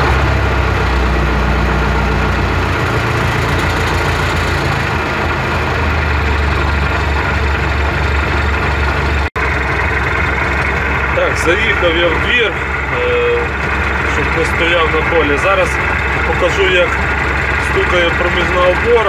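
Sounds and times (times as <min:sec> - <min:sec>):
tractor diesel engine running: 0:00.0 - 0:19.0.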